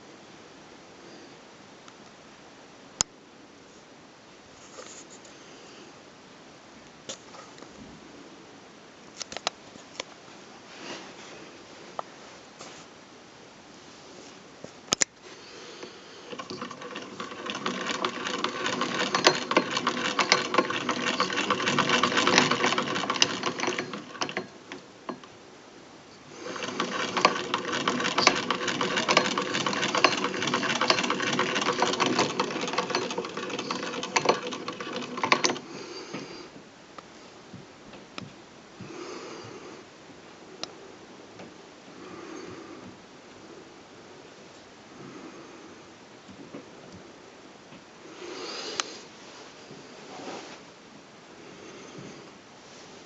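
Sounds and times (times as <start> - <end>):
hand-crank sewing machine rattling: 15.8 - 25.4, 26.2 - 35.7.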